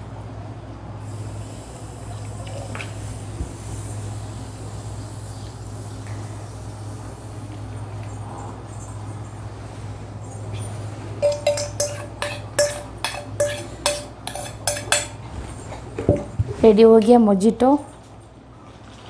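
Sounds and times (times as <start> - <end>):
spoon clinking glass jar: 11.2 - 15.2.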